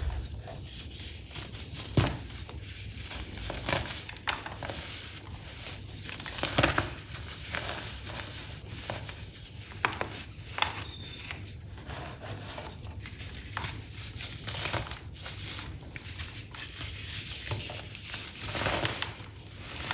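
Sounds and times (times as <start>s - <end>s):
baking soda crunching: 0.0s - 8.8s.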